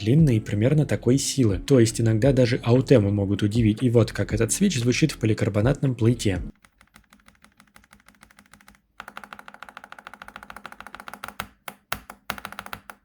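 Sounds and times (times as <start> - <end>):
mechanical keyboard typing: 6.5 - 13.0.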